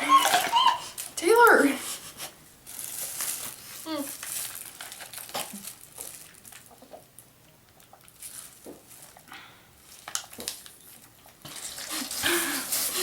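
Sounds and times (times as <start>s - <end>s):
foil pouch crinkling: 2.6s - 13.0s.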